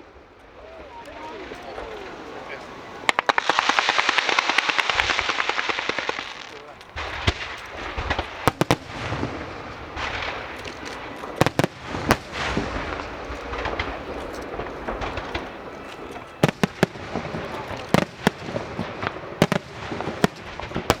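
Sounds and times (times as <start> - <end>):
fireworks bangs: 0.0 - 21.0
fireworks crackle: 0.0 - 21.0.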